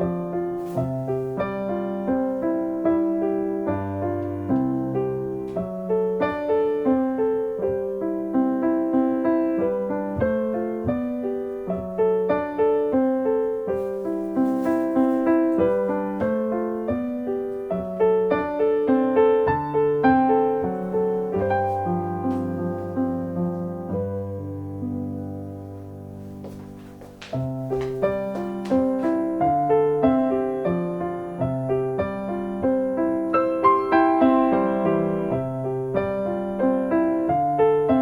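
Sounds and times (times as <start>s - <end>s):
gentle piano music: 0.0s - 38.0s.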